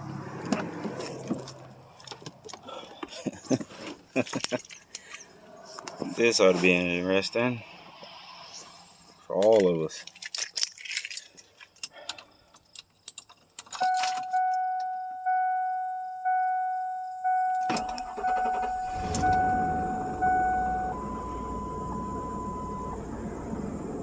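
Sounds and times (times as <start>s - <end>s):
warning chime dinging: 13.8s - 23.0s
steady high tone: 13.8s - 23.7s
engine cranking and idling: 17.5s - 24.0s.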